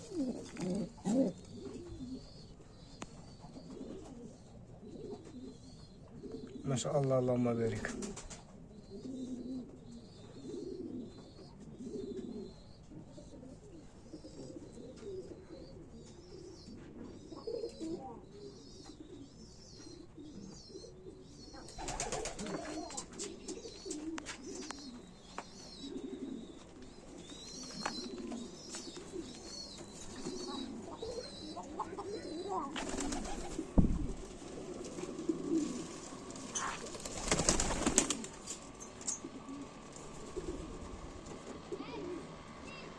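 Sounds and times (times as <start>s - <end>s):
pigeons cooing: 0.0s - 42.9s
rustling clattering noise: 33.6s - 37.0s.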